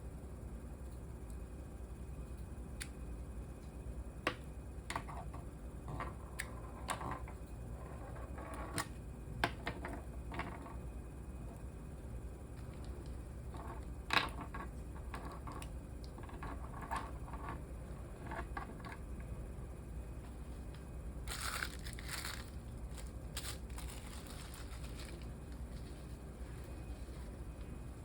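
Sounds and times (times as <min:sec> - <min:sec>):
steady low hum: 0:00.0 - 0:28.0
crinkling rustle: 0:21.3 - 0:27.4.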